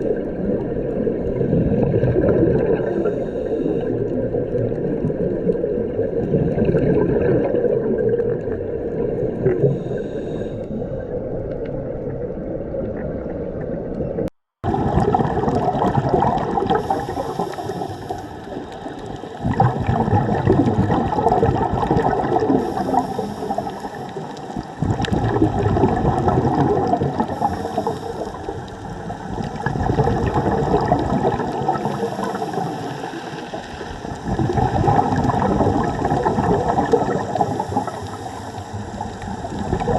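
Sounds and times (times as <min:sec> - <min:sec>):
regulator bubbles hissing: 0:00.0 - 0:13.4, 0:14.6 - 0:39.9
underwater gurgling rush of water: 0:00.0 - 0:39.9.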